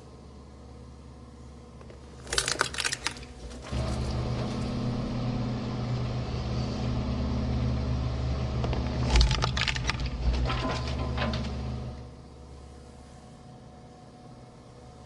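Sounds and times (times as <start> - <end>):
cracks and crunches of rubber: 1.8 - 4.1, 8.6 - 11.5
shredder motor humming: 3.3 - 12.1.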